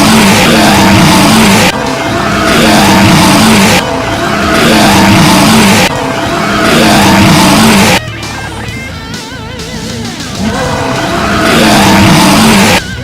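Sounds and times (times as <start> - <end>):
rushing noise: 0.0 - 8.1, 10.3 - 13.0
car engine with wavering pitch: 0.0 - 13.0.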